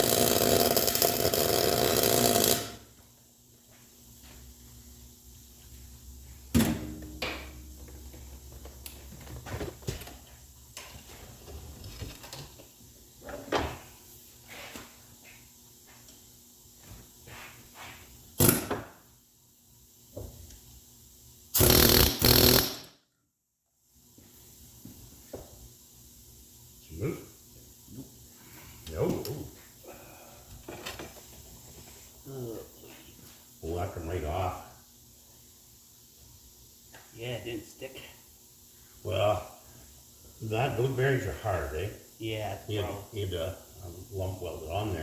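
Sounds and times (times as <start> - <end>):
loud noisy burst: 21.6 - 22.8.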